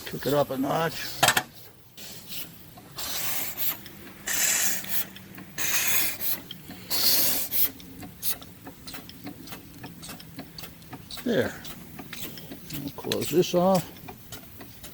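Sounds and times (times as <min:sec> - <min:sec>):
steam engine hissing chuffs: 0:00.0 - 0:14.9.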